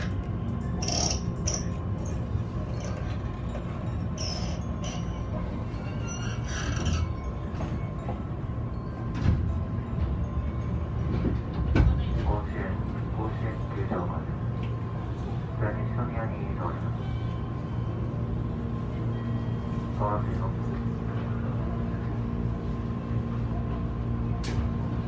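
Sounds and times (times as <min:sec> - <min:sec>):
train running rumble: 0:00.0 - 0:25.0
high-pitched creaks and squeals: 0:00.8 - 0:01.8, 0:04.2 - 0:07.2.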